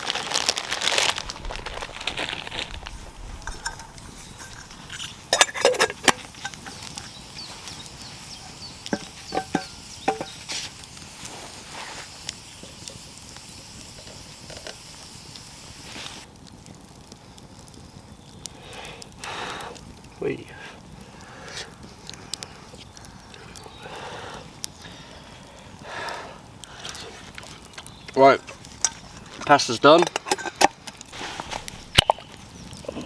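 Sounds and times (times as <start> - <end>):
faint steady hiss: 0.0 - 33.0
metal cooking gear clinking: 3.3 - 6.9, 8.9 - 10.3, 28.8 - 30.7.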